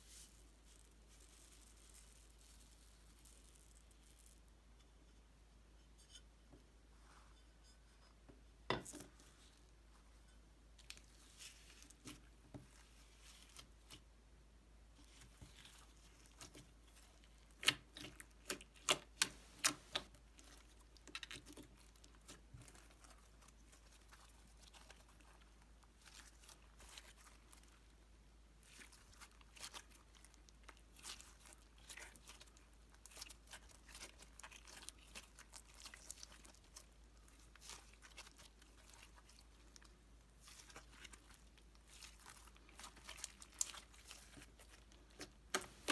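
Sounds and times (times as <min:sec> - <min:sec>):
slime crackling and popping: 0:15.1 - 0:27.8, 0:28.6 - 0:45.9.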